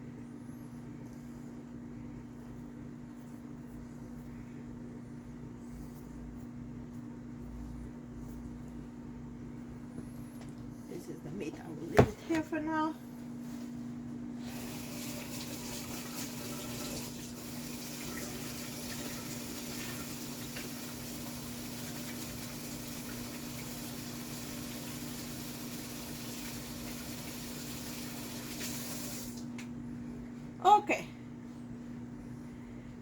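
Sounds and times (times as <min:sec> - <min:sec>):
low steady hum: 0:00.0 - 0:25.4, 0:29.3 - 0:33.0
water running from tap: 0:14.4 - 0:29.5.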